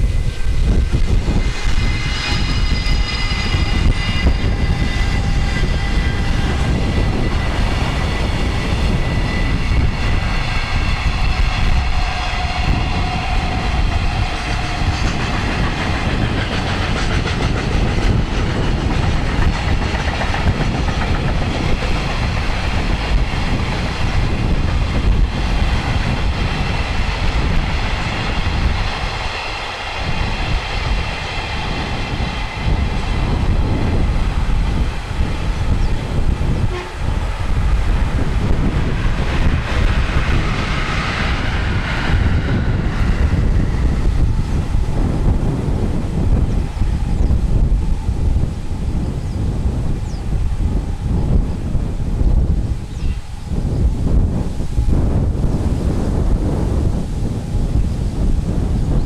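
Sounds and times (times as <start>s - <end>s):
wagon wheels rumbling on rails: 0.0s - 59.0s
high ringing tones: 1.0s - 15.2s.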